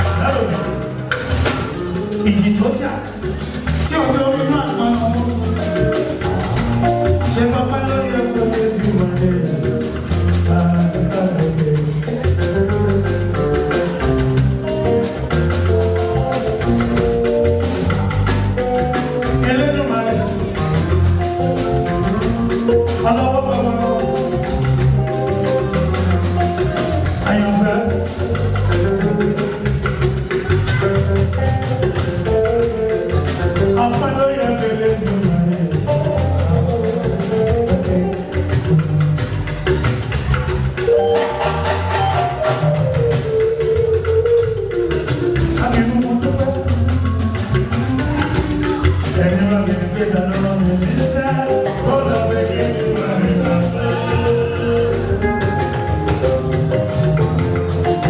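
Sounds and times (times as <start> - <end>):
music with steady beat and bass: 0.0 - 58.0.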